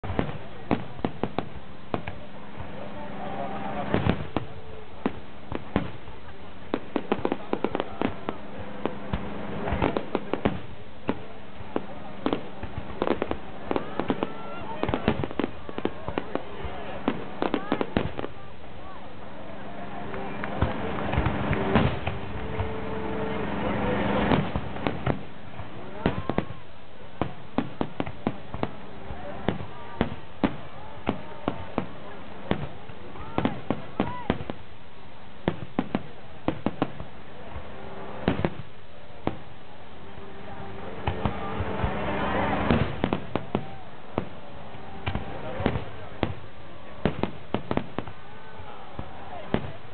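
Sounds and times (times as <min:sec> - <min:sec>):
fireworks bangs and cracks: 0:00.0 - 0:34.8, 0:35.4 - 0:49.9.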